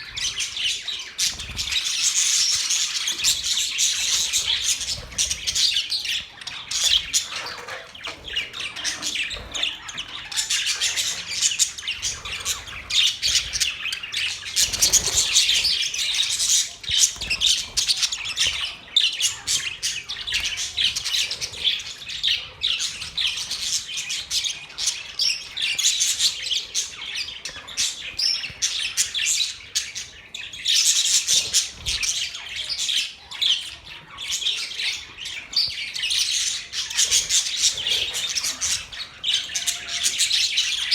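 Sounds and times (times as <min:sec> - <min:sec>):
budgies chirping: 0:00.0 - 0:40.9.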